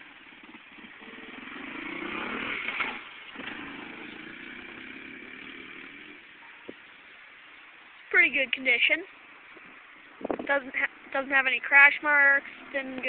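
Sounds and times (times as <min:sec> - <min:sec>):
dirt bike engine passing: 0:00.0 - 0:06.4, 0:10.4 - 0:13.0.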